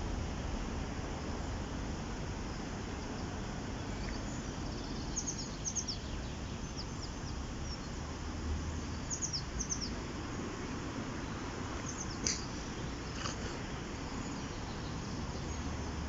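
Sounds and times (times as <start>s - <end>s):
river water flowing: 0.0s - 16.0s
small bird chirping: 3.8s - 8.0s, 8.7s - 10.0s, 11.2s - 15.8s.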